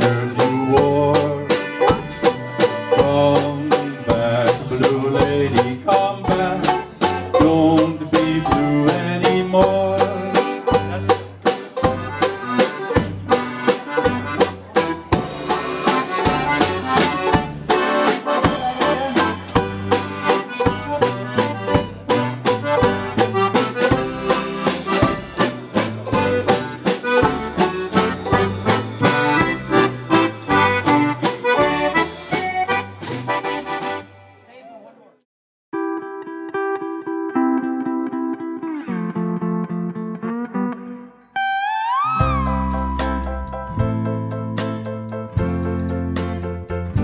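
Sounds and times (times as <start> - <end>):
accordion: 0.0 - 34.6
dance band playing a waltz: 0.0 - 34.6.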